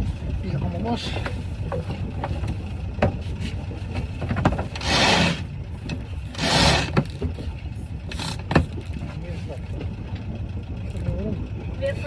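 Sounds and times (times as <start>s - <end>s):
steady low rumble: 0.0s - 4.8s
rope rasping through fittings: 4.5s - 5.4s, 6.3s - 7.2s.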